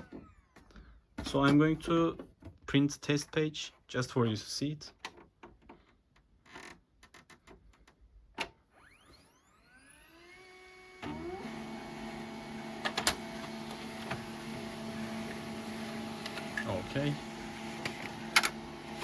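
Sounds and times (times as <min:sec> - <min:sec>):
printer motor whine: 0:08.9 - 0:19.0
printer mechanism humming: 0:11.0 - 0:19.0
faint printer clicks: 0:12.8 - 0:14.3, 0:16.1 - 0:19.0
sharp printer clacks: 0:16.1 - 0:19.0.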